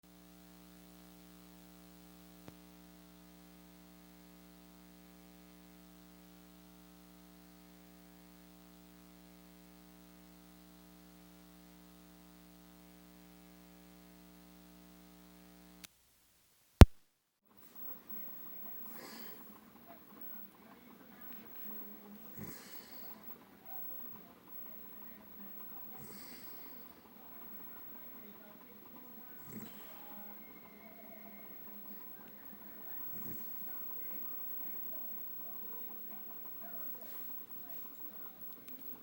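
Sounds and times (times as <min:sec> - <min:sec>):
faint steady hum: 0:00.0 - 0:39.0
man snoring: 0:18.8 - 0:19.5, 0:22.2 - 0:23.2, 0:25.8 - 0:27.6, 0:29.2 - 0:32.2, 0:32.8 - 0:34.4.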